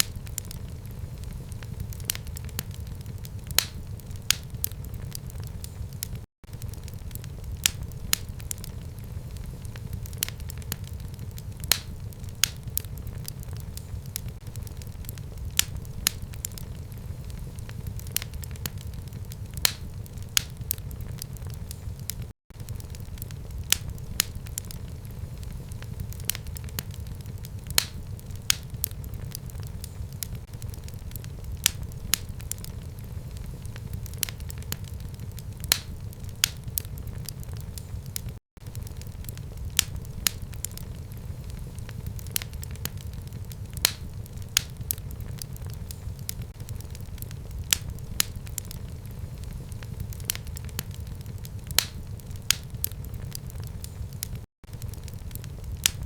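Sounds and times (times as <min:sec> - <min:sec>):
fire crackling and popping: 0:00.0 - 0:56.0.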